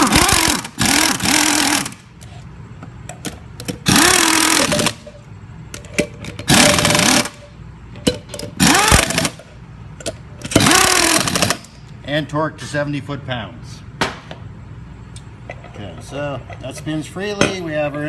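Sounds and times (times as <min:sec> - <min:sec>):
power driver running bolts: 0:00.0 - 0:02.0, 0:03.3 - 0:05.0, 0:06.3 - 0:07.4, 0:08.6 - 0:09.4, 0:10.4 - 0:11.7.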